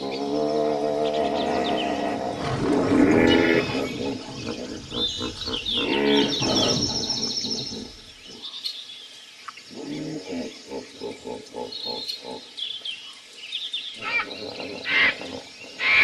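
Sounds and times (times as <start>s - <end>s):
low animal calls: 0.0s - 8.5s
birds chirping and trilling: 0.0s - 16.0s.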